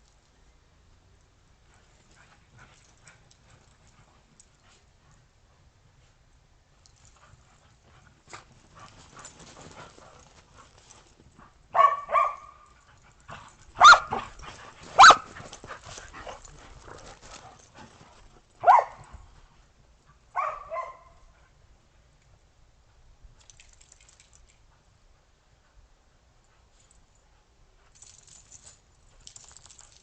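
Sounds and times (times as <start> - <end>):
dogs barking: 11.7 - 12.6, 13.8 - 14.3, 15.0 - 15.4, 18.6 - 19.0, 20.4 - 21.2.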